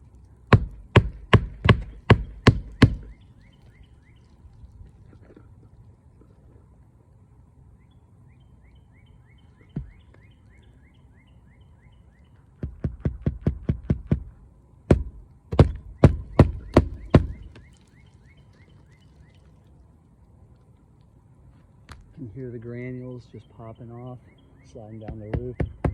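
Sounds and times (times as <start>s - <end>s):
hammer driving nails: 0.6s - 3.1s
bird chirping: 1.9s - 5.4s, 7.6s - 12.8s, 15.6s - 19.8s, 22.2s - 25.9s.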